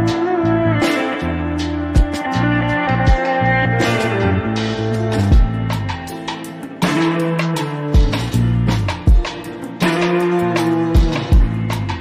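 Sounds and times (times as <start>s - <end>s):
guitar: 0.0s - 12.0s
steady bass line: 0.0s - 12.0s
drum thumps: 11.0s - 11.7s.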